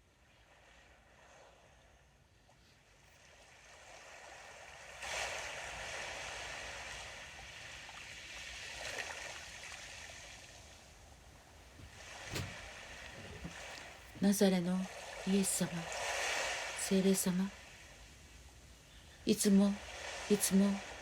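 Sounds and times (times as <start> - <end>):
sea waves washing onto shore: 2.9 - 21.0.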